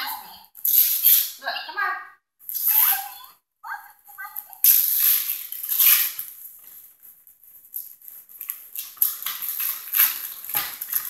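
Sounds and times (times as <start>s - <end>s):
wrapping paper rustling and tearing: 0.6s - 1.4s, 2.5s - 3.3s, 4.2s - 11.0s.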